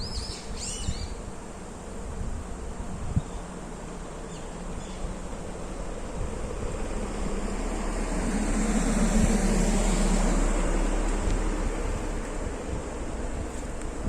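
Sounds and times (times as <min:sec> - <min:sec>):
car passing by: 0:06.1 - 0:13.8.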